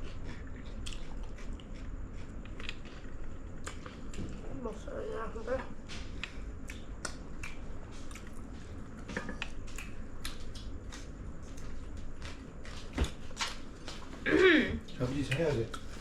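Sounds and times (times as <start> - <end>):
person chewing food: 0.0 - 4.4, 5.9 - 14.2.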